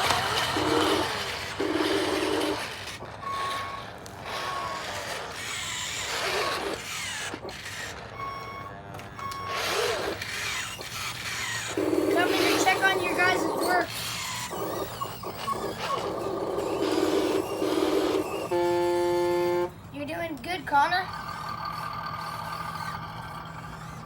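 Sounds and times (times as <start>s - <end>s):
small electric motors whirring: 0.0s - 24.0s
reversing alarm beeps: 3.2s - 4.8s, 8.1s - 10.1s, 12.1s - 19.6s
low buzzing tone: 16.0s - 19.9s, 20.8s - 24.0s.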